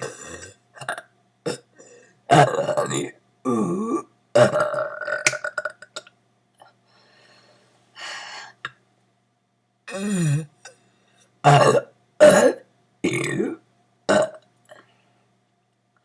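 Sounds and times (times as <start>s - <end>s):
person belching: 0.0s - 1.7s, 2.3s - 6.1s, 9.9s - 10.5s, 11.4s - 14.4s.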